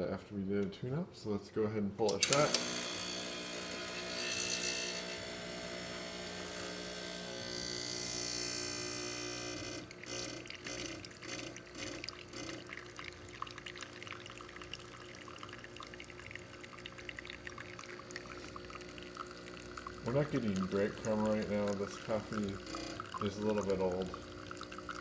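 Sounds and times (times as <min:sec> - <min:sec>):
espresso machine pump humming: 0:02.1 - 0:25.0
espresso machine hissing: 0:02.2 - 0:13.2, 0:17.8 - 0:25.0
espresso dripping into cup: 0:02.2 - 0:25.0.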